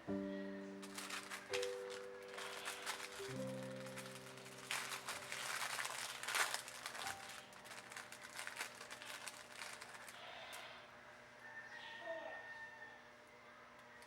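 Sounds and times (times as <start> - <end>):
packaging crinkling: 0.8 - 10.6.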